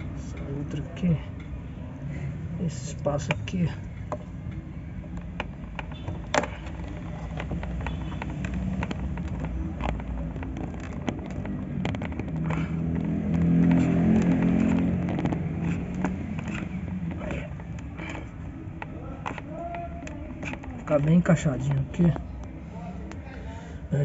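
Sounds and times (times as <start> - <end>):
plastic connectors clicking: 3.2 - 23.2
vehicle engine drone passing: 12.3 - 18.3.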